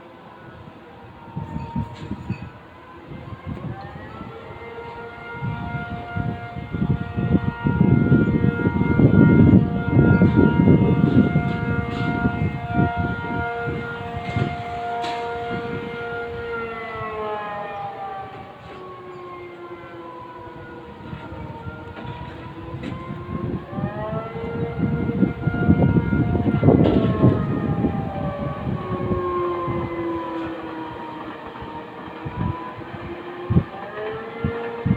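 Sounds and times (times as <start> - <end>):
air-raid siren wailing: 0.0 - 34.9.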